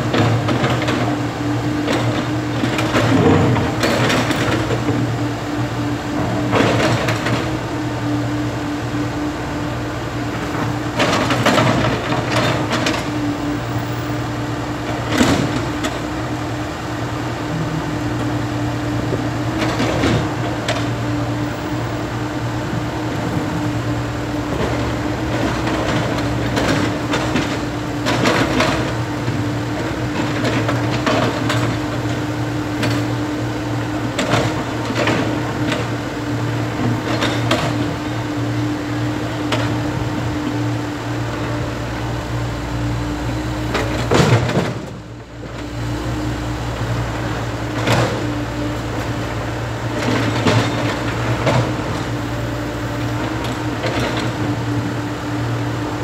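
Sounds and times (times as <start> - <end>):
excavator diesel engine running: 0.0 - 56.0.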